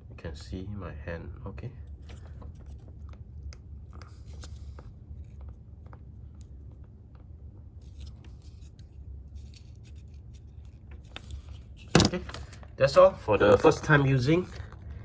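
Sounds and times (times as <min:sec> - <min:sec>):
steady low hum: 0:00.0 - 0:15.0
small handling clicks and scrapes: 0:01.8 - 0:12.7.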